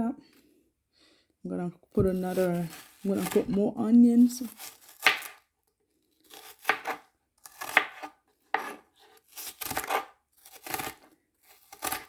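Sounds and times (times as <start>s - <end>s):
onion pieces crunching: 4.4s - 5.5s, 6.2s - 12.0s.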